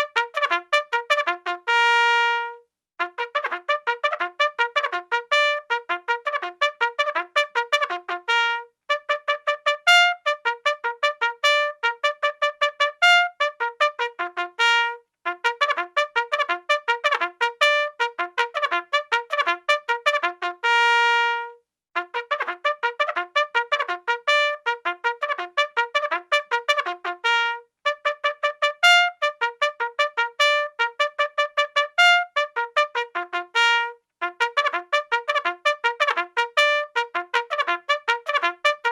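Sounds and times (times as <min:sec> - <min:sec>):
bugle playing military call: 0:00.0 - 0:38.9.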